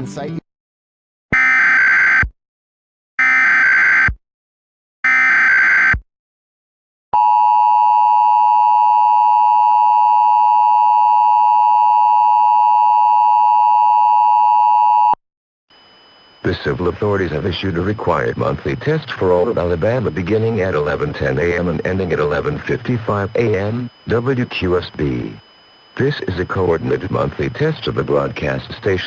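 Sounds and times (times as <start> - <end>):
digital data bursts: 16.5 - 29.0.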